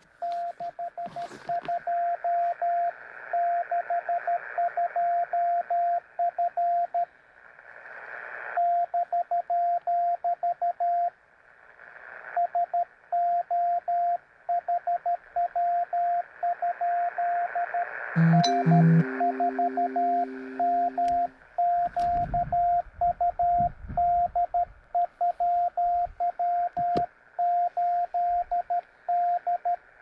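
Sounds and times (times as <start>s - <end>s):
morse code tone: 18.2s - 21.3s.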